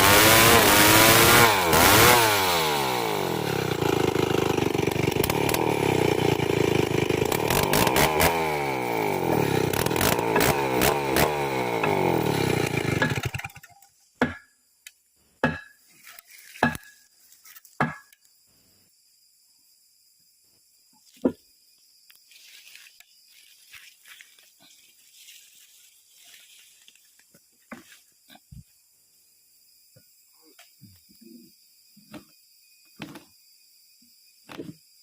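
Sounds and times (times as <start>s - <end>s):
chainsaw running: 0.0s - 13.8s
sharp knocks: 17.8s - 18.1s.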